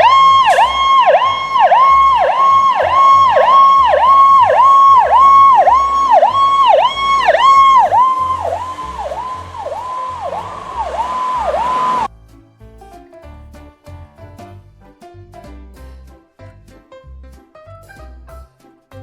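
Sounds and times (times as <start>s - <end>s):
toy electronic siren: 0.0s - 12.1s.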